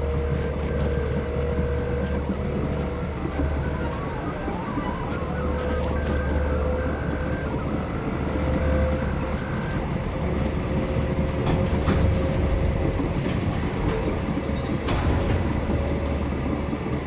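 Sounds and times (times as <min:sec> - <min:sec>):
deep steady rumble: 0:00.0 - 0:17.0.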